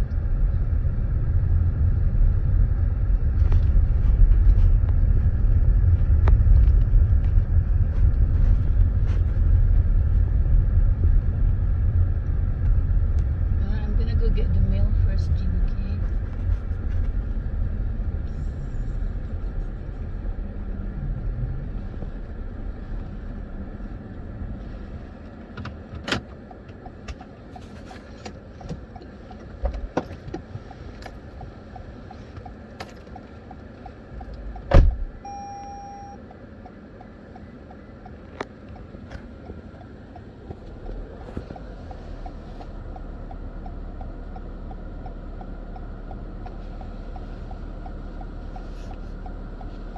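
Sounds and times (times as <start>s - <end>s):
car engine and road rumble: 0.0s - 49.9s
loud thump: 34.7s - 35.1s
short electronic beep: 35.2s - 36.2s.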